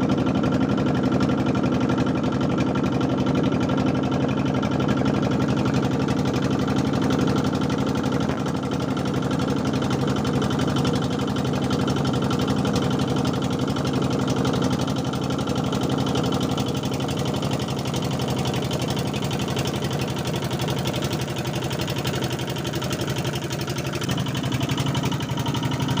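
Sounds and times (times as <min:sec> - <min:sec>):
small engine running steadily: 0:00.0 - 0:26.0.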